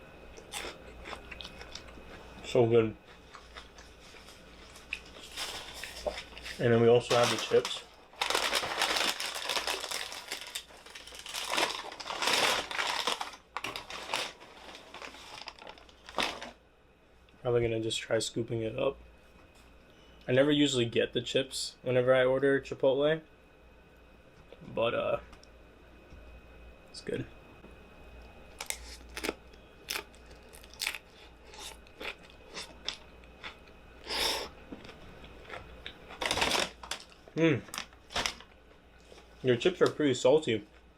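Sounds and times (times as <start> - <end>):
chip bag crinkling: 3.1 - 16.6, 28.6 - 33.6, 34.8 - 40.2.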